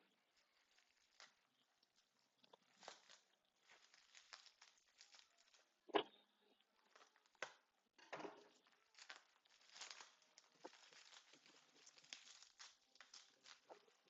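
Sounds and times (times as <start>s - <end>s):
wrapping crinkling and tearing: 0.1s - 5.8s, 8.5s - 14.0s.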